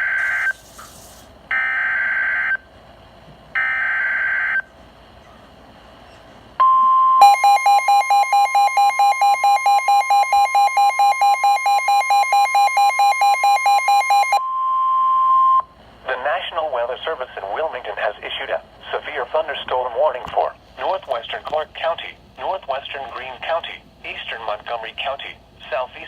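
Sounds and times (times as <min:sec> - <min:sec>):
steady warning alarm tone: 0:00.0 - 0:00.6, 0:06.6 - 0:15.7
electronic alarm beeping: 0:06.6 - 0:15.7.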